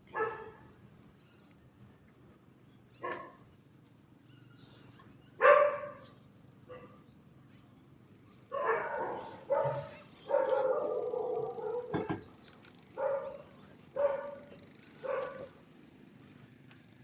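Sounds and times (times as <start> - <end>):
dog barking: 0.1 - 0.6, 3.0 - 3.4, 5.4 - 6.1, 8.5 - 12.0, 13.0 - 14.4, 15.0 - 15.6.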